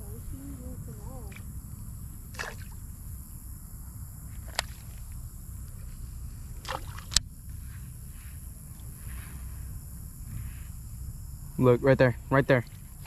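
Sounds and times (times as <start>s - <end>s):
low rumble: 0.0s - 13.0s
sharp clicks: 4.4s - 4.8s.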